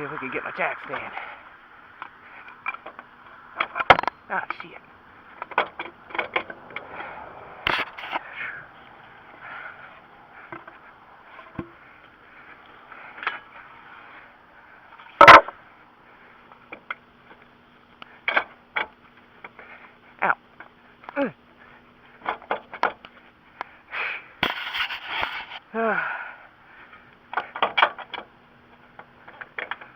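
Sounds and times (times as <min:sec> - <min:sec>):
faint steady hum: 0:00.0 - 0:29.9
metal knocks and scrapes: 0:05.4 - 0:08.2.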